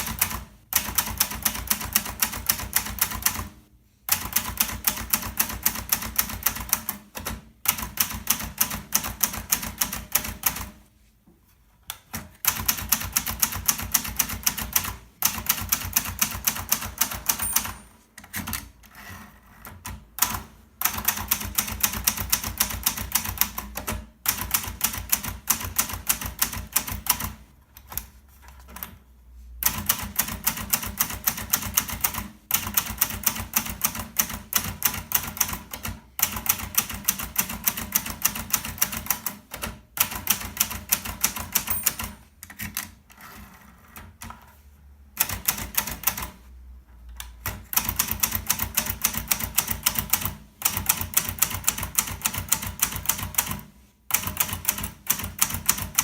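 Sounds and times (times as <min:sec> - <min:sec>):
typewriter key strikes: 0:15.6 - 0:18.6, 0:41.2 - 0:42.2.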